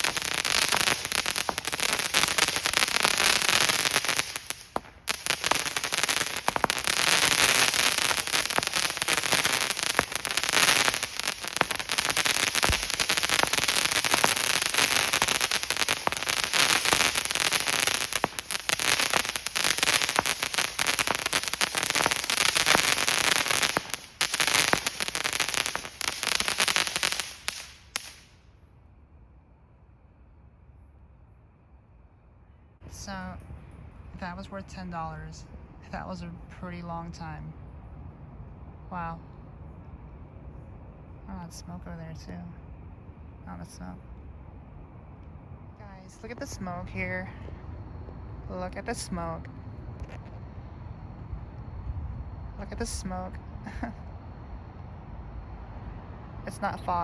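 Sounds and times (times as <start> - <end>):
fireworks crackling pops: 0.0 - 28.5, 46.1 - 50.5.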